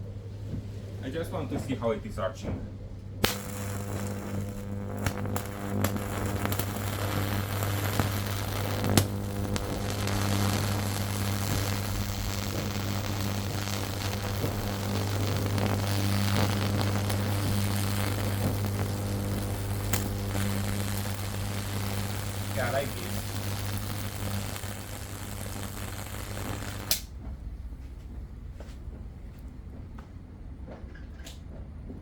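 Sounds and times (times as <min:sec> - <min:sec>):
transformer humming: 0:01.2 - 0:28.5
electric arc buzzing crackle: 0:03.2 - 0:27.2
electric arc sharp snaps: 0:03.2 - 0:27.2.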